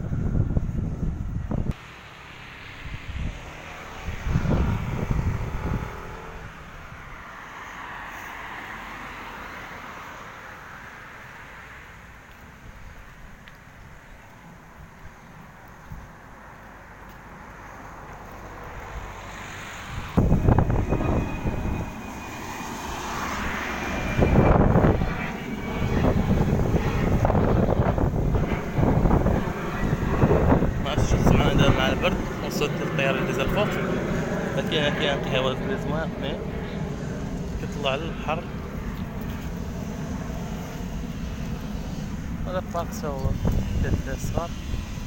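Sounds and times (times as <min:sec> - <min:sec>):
wind buffeting microphone: 0:00.0 - 0:01.8, 0:02.7 - 0:07.3, 0:17.2 - 0:45.0
airplane engine rumble: 0:00.0 - 0:45.0
jet aircraft passing overhead: 0:00.0 - 0:45.0.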